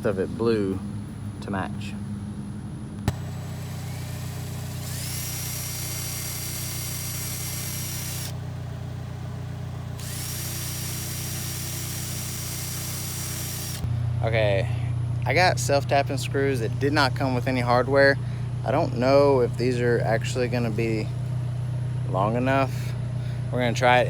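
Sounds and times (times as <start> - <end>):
steady low hum: 0.0 - 24.0
power drill whining: 3.1 - 8.4, 9.9 - 13.9.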